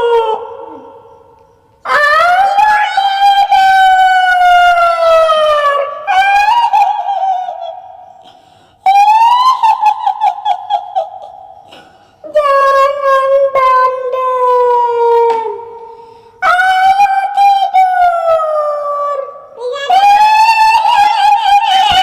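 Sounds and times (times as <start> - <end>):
high-pitched wailing ghost cries: 0.0 - 1.1, 1.9 - 8.2, 8.8 - 15.8, 16.4 - 22.0.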